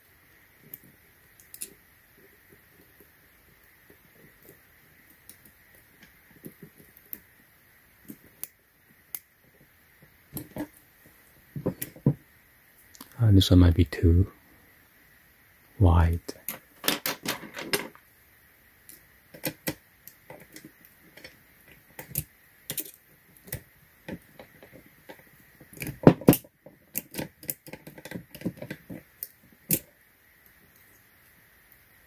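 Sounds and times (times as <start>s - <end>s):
lock picks clicking and scraping: 22.0s - 24.8s, 25.6s - 29.1s.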